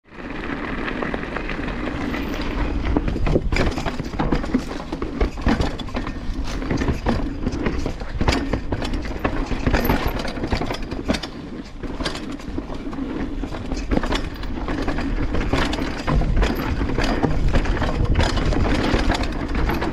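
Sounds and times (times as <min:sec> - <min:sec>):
bike tyres and wind rumble: 0:00.0 - 0:19.9
bike chain rattling: 0:00.2 - 0:19.9
sharp clicks and knocks: 0:02.2 - 0:19.9.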